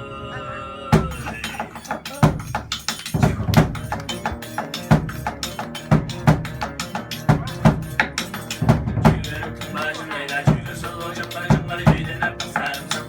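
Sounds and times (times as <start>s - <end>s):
music with busy drum pattern: 0.9s - 13.0s
heavy low drum hits: 1.0s - 1.4s
held notes: 1.0s - 13.0s.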